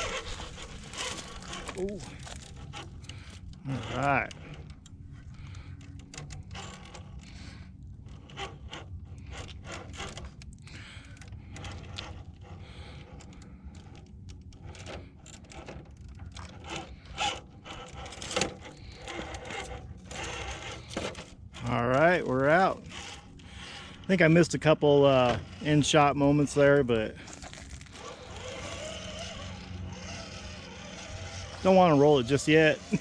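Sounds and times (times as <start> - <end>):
toy car electric motor drone: 0.0 - 4.8, 5.5 - 24.1, 25.2 - 33.0
tyres scraping and crunching on rock: 0.0 - 4.8, 14.6 - 33.0.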